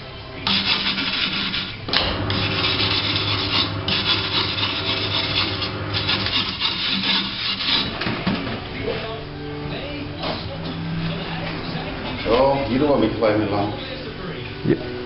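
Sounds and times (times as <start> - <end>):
low motor hum: 0.0 - 15.0
abrasive tool scraping wheel rim: 0.4 - 8.2.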